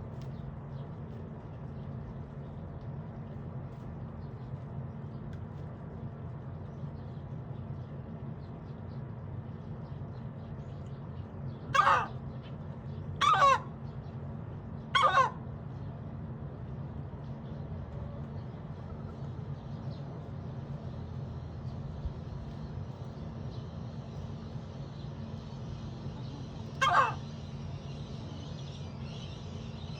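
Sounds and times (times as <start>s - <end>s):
steady low hum: 0.0s - 29.9s
hen squawking: 11.8s - 12.2s, 13.2s - 13.7s, 15.0s - 15.4s, 26.8s - 27.3s.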